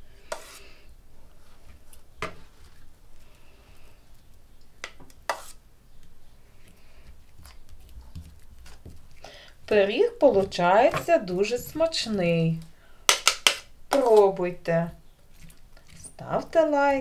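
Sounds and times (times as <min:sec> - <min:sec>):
spoon scraping pot: 0:00.2 - 0:00.8, 0:05.2 - 0:05.6
squishy jelly sounds: 0:15.2 - 0:16.2.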